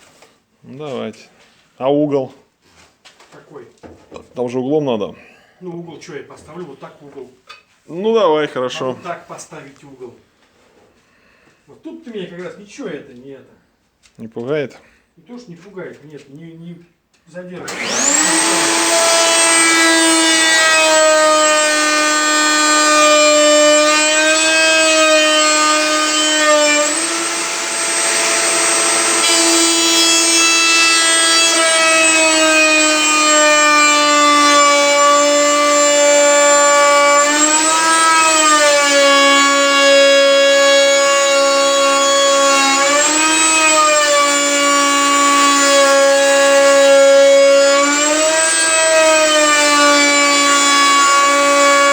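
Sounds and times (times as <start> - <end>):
power tool motor whine: 17.7 - 51.9.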